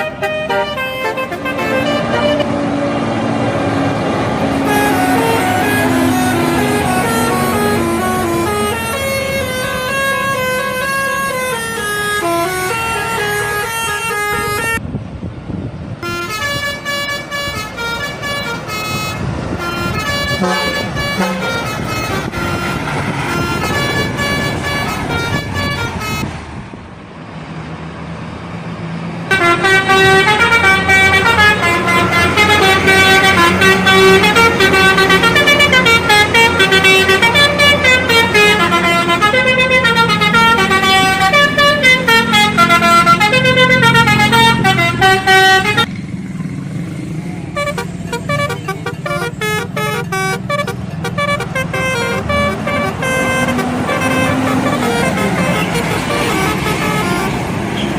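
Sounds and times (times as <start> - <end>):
bus multi-tone horn tune: 0.0 - 14.8, 16.0 - 26.4, 29.2 - 46.5, 47.4 - 57.9
bus engine humming: 0.0 - 57.9.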